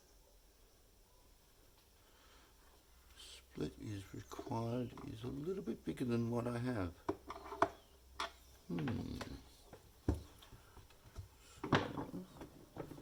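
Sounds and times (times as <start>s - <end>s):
low mumble: 8.7s - 9.6s.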